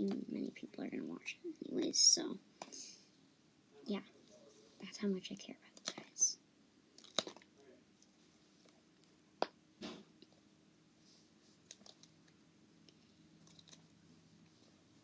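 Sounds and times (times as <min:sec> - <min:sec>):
soft rustle: 0:11.0 - 0:12.2.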